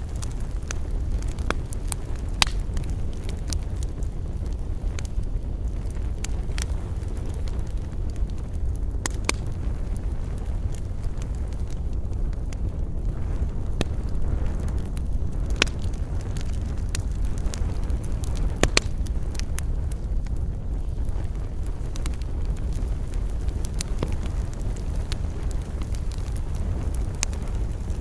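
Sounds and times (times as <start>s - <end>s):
campfire crackling: 0.0s - 28.0s.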